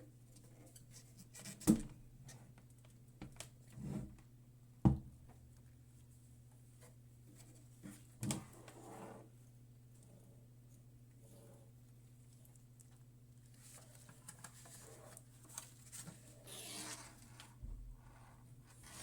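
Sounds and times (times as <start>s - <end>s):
rustling: 12.3s - 19.0s.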